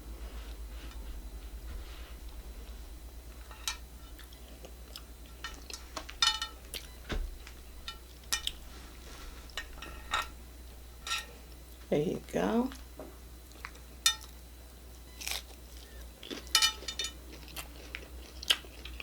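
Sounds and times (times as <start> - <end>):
steady low hum: 0.0 - 19.0
tableware and packaging clinks: 5.4 - 6.6, 9.6 - 10.3, 16.4 - 17.2.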